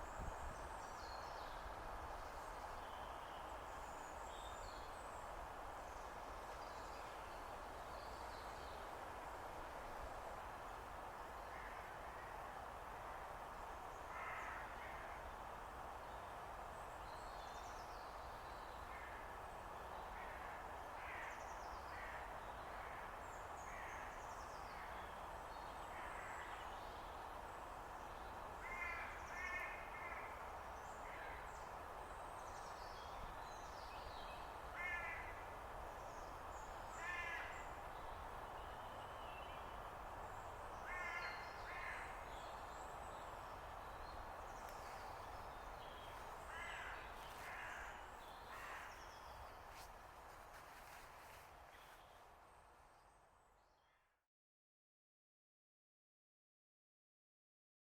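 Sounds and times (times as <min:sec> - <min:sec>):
crows cawing: 0:14.1 - 0:15.0, 0:28.6 - 0:30.3, 0:34.7 - 0:35.4, 0:37.0 - 0:37.6, 0:40.8 - 0:42.2, 0:46.5 - 0:49.0.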